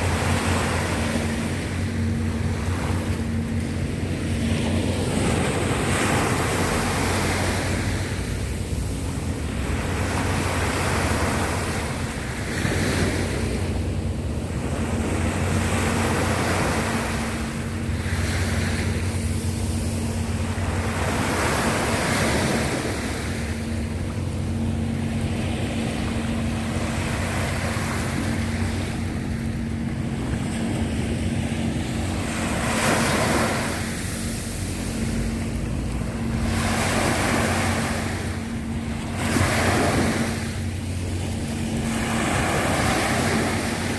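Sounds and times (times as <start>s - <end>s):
low engine hum: 0.0s - 43.9s
sea waves breaking: 0.0s - 43.9s.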